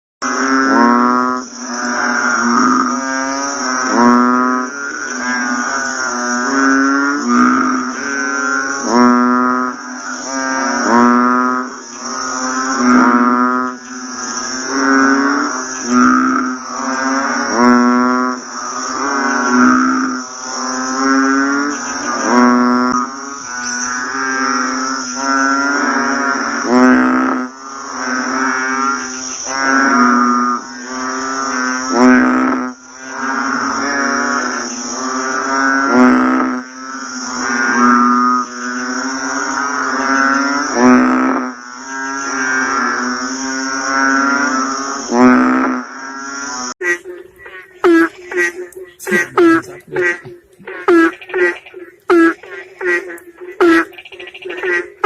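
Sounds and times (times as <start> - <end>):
frogs croaking: 0.2 - 55.0
insect trill: 0.2 - 55.0.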